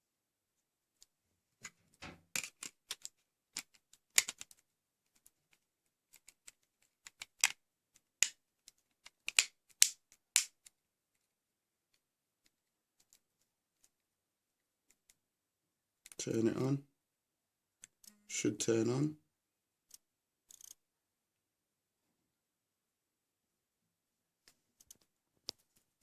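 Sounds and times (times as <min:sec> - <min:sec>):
plastic clicks and snaps: 0:02.3 - 0:10.8.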